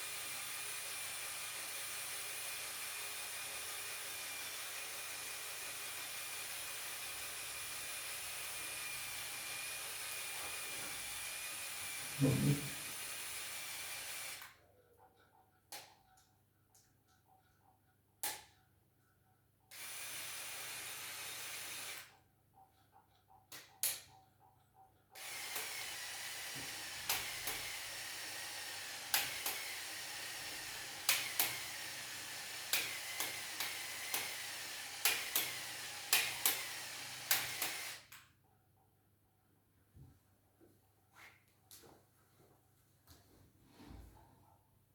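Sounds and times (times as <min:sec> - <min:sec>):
small motor running: 0:00.0 - 0:14.6, 0:19.7 - 0:22.2, 0:25.2 - 0:38.2.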